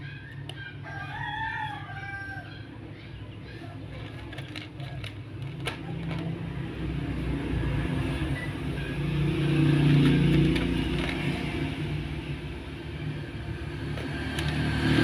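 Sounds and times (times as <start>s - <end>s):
vehicle engine passing by: 5.7s - 15.0s.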